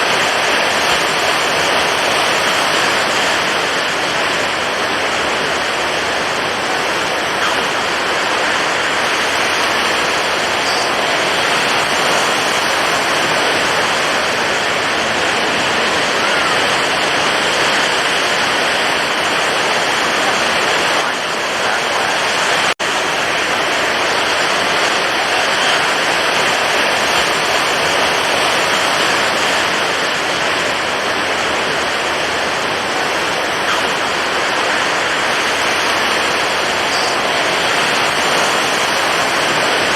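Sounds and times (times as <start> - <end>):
stormy ocean surf crashing: 0.0 - 39.9.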